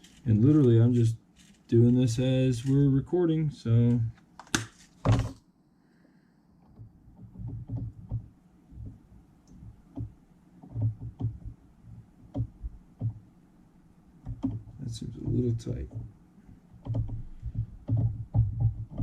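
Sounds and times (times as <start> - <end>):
light clicks and dull knocks: 6.6 - 13.3, 14.2 - 19.0.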